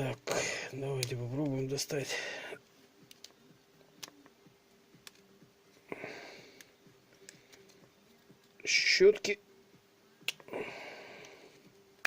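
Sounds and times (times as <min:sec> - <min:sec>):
faint steady hum: 0:00.0 - 0:12.0
small parts clicking: 0:03.0 - 0:03.4, 0:04.0 - 0:04.3.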